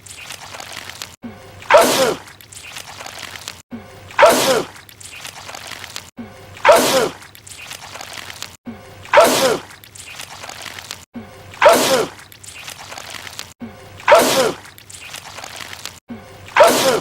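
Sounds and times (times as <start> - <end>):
man sneezing loudly: 14.1 - 14.6, 16.6 - 17.0.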